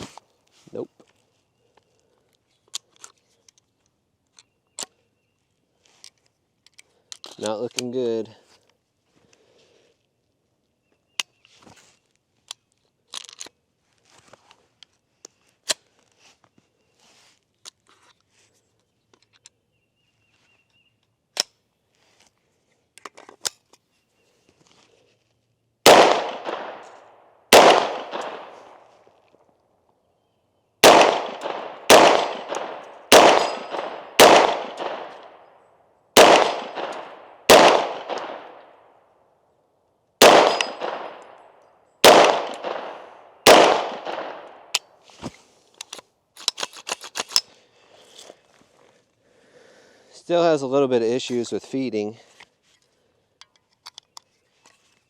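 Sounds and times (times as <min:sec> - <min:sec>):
metallic clicks of rifle handling: 0:01.8 - 0:05.0, 0:05.8 - 0:08.0, 0:12.4 - 0:13.6, 0:17.6 - 0:19.6, 0:20.9 - 0:21.6, 0:22.9 - 0:23.9, 0:25.9 - 0:29.4, 0:30.8 - 0:35.4, 0:36.2 - 0:38.8, 0:40.2 - 0:45.0, 0:45.7 - 0:48.4, 0:52.4 - 0:55.0
rifle shots echoing: 0:25.8 - 0:28.9, 0:30.8 - 0:35.5, 0:36.2 - 0:38.7, 0:40.2 - 0:41.4, 0:42.0 - 0:44.8.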